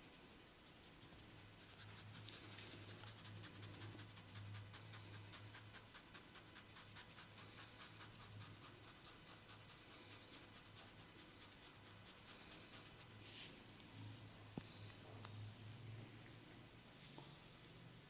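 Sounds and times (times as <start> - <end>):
hands rubbing scratchily: 0.0 - 13.7.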